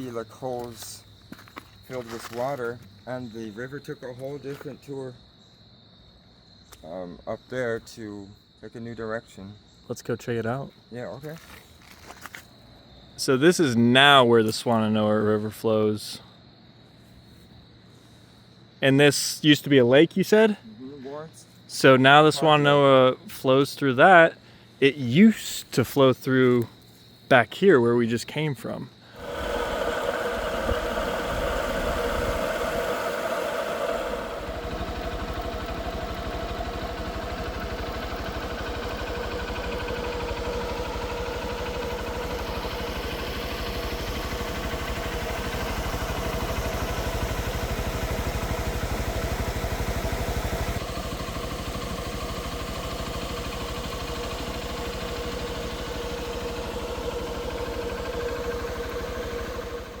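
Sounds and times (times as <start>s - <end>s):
engine humming: 29.1s - 60.0s.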